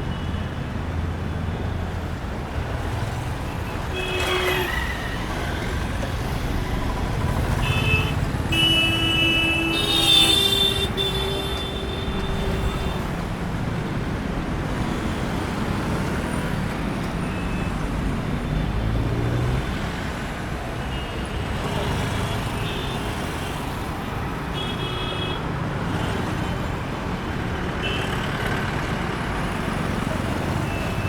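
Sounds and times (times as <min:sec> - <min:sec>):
street traffic rumble: 0:00.0 - 0:31.0
car horns honking: 0:07.6 - 0:13.2.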